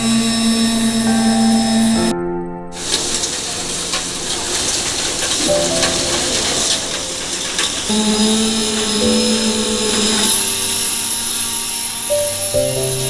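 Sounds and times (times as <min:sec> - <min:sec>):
music of held notes: 0:00.0 - 0:13.0
steady noisy hiss: 0:02.8 - 0:13.0.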